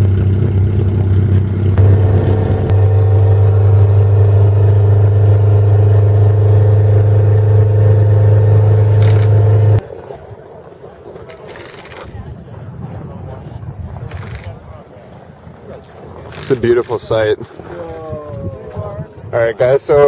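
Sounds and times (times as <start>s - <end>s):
car engine droning: 0.0s - 9.8s.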